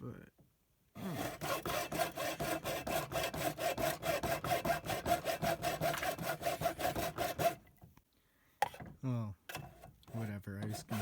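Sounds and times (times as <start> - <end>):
handsaw cutting plastic: 1.0 - 7.6, 9.5 - 11.0.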